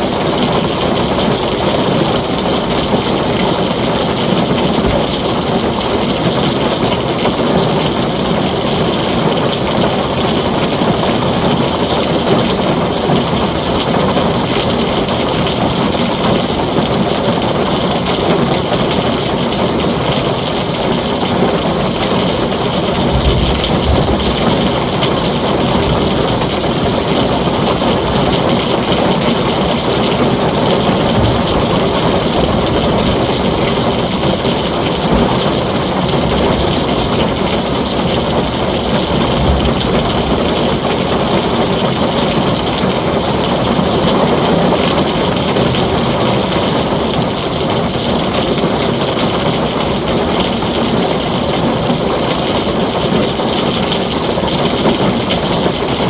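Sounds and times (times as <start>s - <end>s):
heavy rain on a tin roof: 0.0s - 56.0s
low rumbles of thunder: 20.9s - 49.5s.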